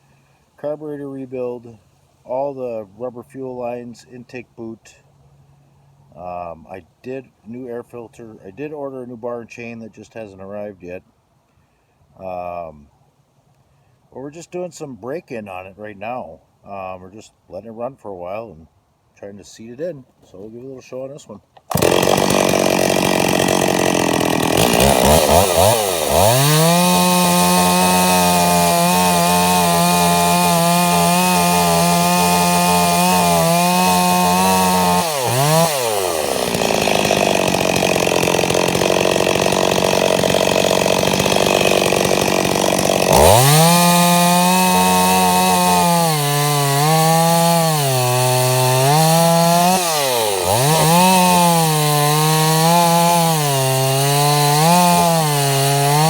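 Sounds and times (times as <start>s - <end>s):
chainsaw cutting into log: 21.6s - 56.0s.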